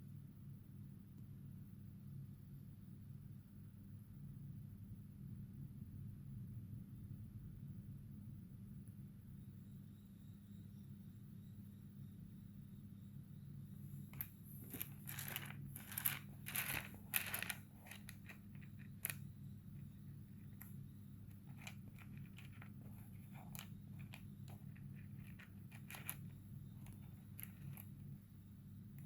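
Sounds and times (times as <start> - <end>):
low electrical hum: 0.0 - 29.0
stones clicking and rustling: 14.0 - 28.1.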